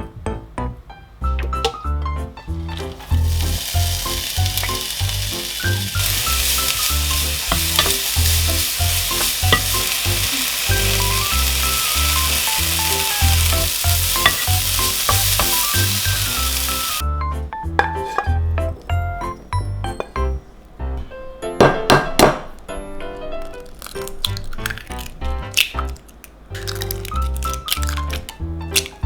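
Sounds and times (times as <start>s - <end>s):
food sizzling in pan: 2.5s - 17.0s.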